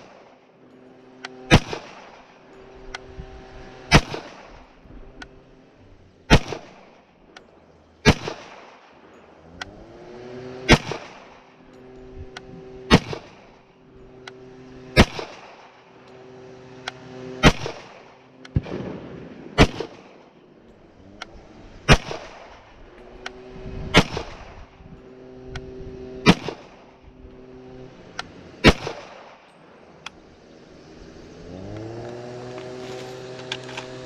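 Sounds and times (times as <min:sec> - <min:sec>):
gunshots with echo: 0:01.4 - 0:02.4, 0:03.9 - 0:04.6, 0:06.3 - 0:06.8, 0:08.0 - 0:09.1, 0:10.6 - 0:11.4, 0:12.9 - 0:13.5, 0:15.0 - 0:15.8, 0:17.4 - 0:20.4, 0:21.8 - 0:22.6, 0:23.9 - 0:24.6, 0:26.2 - 0:26.8, 0:28.6 - 0:29.4.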